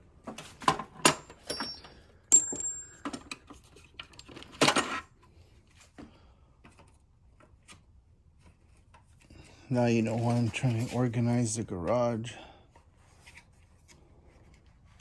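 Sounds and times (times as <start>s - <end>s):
metal hand tools clinking: 1.4s - 3.1s.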